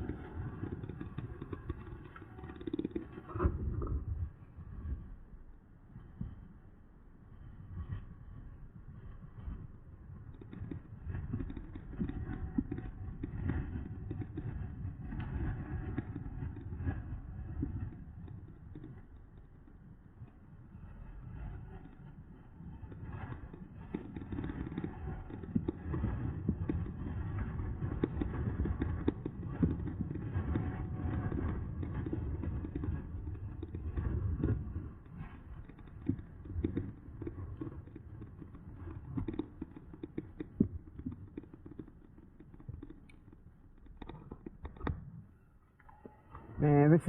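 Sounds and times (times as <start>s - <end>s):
bike tyres rumbling on rough path: 7.8s - 45.4s.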